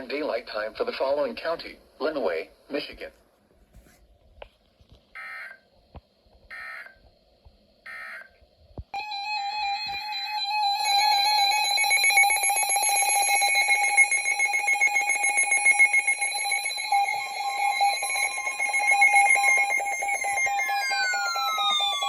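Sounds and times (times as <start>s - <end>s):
harsh alarm tone: 9.0s - 22.0s
alert data burst: 10.6s - 22.0s.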